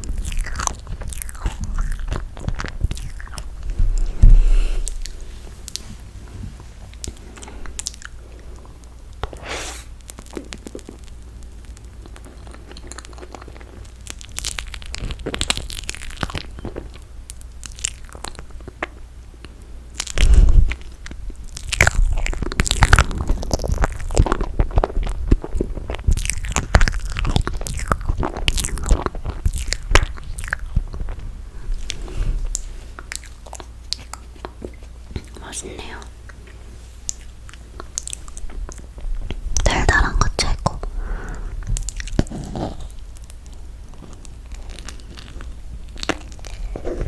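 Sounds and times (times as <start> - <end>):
biting and chewing marshmallow: 0.0 - 5.8, 6.9 - 47.0
loud low thump: 3.7 - 5.1.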